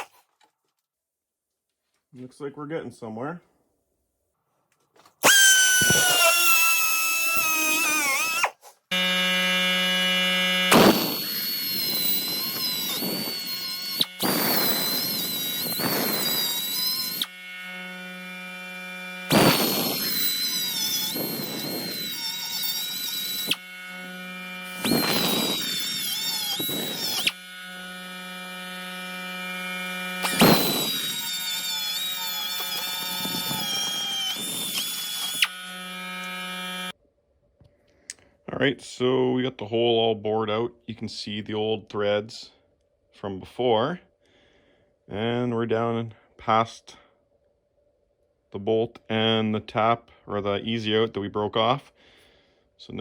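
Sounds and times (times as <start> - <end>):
die grinder whining: 5.2 - 37.0.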